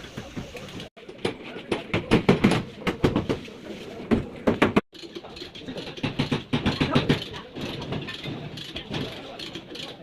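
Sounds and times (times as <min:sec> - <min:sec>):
metal tools clicking and rattling: 0:04.9 - 0:10.0.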